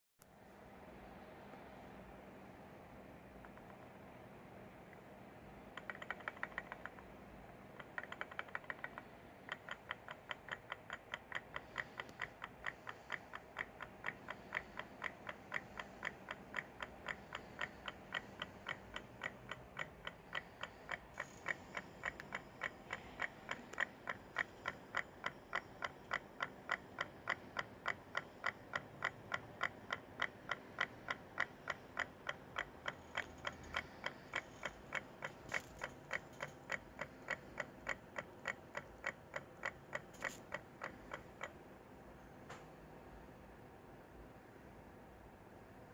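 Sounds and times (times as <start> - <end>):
pulse motor clicking: 7.8 - 41.6.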